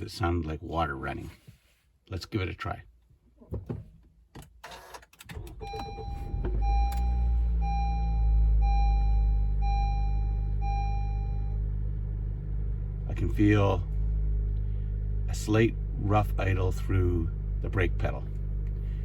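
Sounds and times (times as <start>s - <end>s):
car engine starting and idling: 3.4s - 19.0s
dashboard chime beeping: 5.6s - 11.6s.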